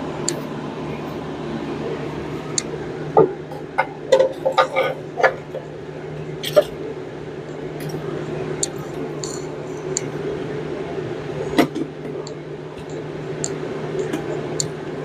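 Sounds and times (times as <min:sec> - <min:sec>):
steady background hum: 0:00.0 - 0:15.0.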